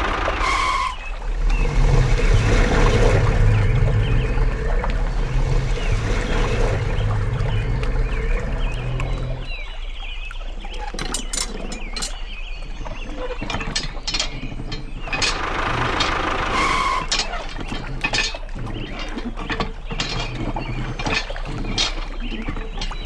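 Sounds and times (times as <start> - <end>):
mechanical clicking and clattering: 0.0 - 9.6, 10.8 - 23.0.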